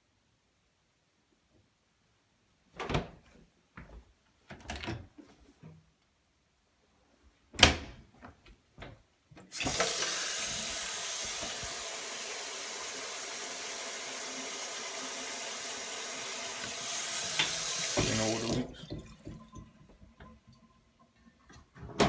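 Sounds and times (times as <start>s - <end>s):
water running into sink: 9.5s - 21.8s.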